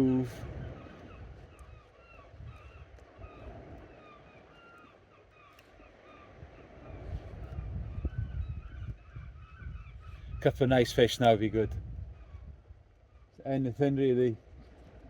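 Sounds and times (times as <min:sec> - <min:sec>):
birds chirping faintly: 0:00.0 - 0:11.4.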